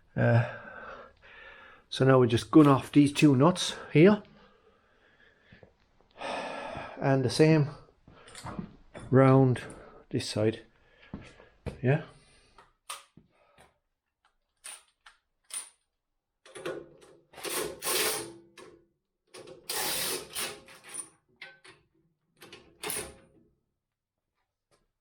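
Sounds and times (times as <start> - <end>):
impact wrench undoing nuts: 17.4 - 18.4, 19.4 - 21.6.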